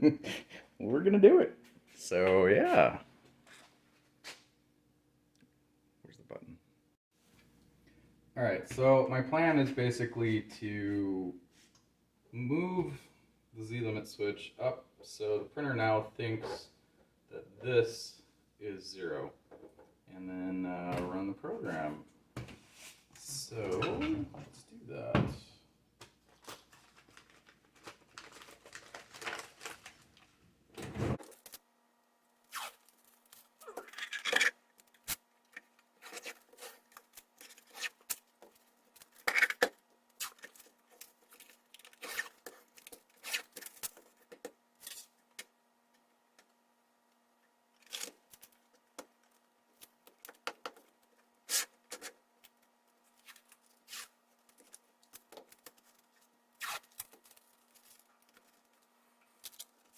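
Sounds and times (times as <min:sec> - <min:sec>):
clicks and scrapes of parts: 0:32.7 - 0:45.5.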